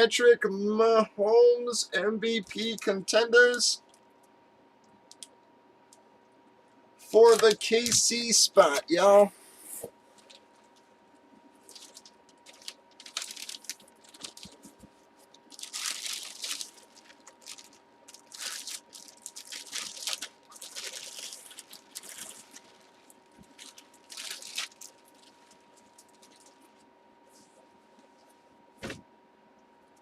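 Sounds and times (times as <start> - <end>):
packaging crinkling and rustling: 7.3 - 8.8, 10.1 - 10.9, 11.5 - 26.8.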